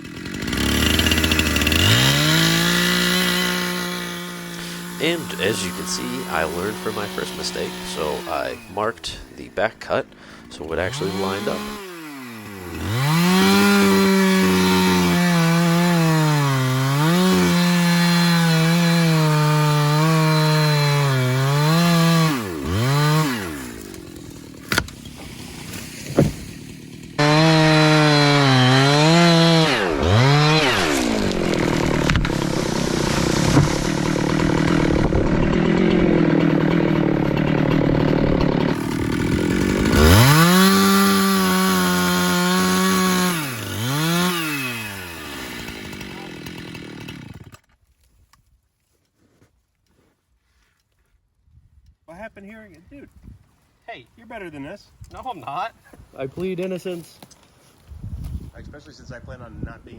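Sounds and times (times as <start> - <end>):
chainsaw cutting tree trunk: 0.0 - 47.8
wood cracking: 0.0 - 48.4.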